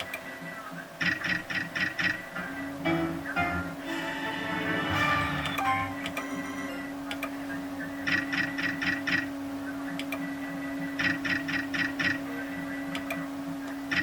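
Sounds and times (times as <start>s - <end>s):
steady low hum: 0.0s - 14.0s
slot machine electronic beeps: 2.8s - 7.1s.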